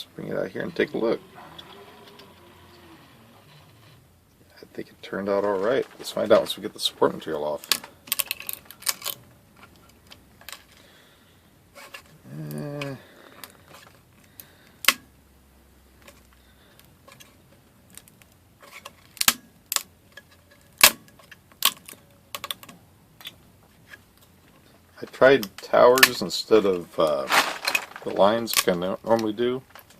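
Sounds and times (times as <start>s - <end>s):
person's low voice: 12.2s - 13.2s.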